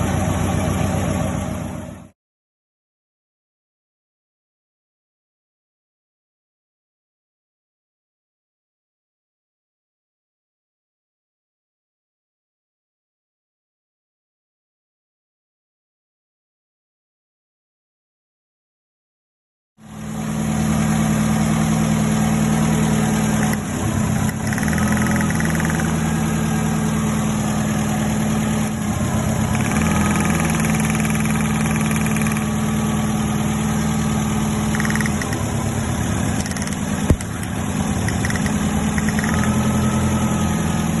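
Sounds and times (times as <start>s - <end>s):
car engine idling: 0.0s - 2.1s, 19.8s - 41.0s
sharp click: 23.4s - 23.6s, 24.3s - 25.9s, 29.6s - 32.5s, 34.7s - 35.4s, 36.4s - 37.5s, 38.1s - 39.6s.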